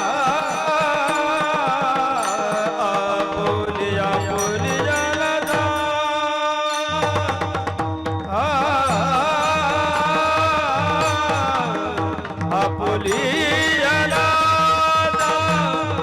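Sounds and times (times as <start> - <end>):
man singing ornamented melody: 0.0 - 16.0.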